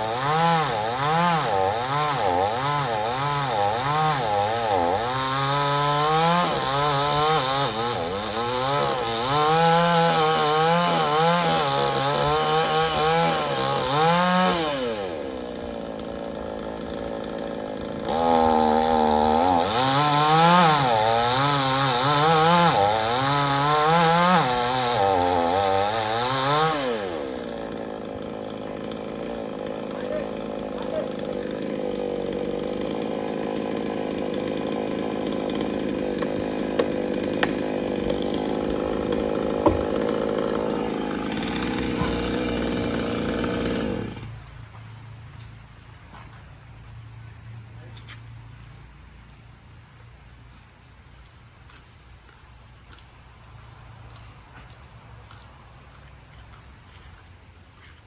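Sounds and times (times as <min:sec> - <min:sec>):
chainsaw cutting wood: 0:00.0 - 0:44.5.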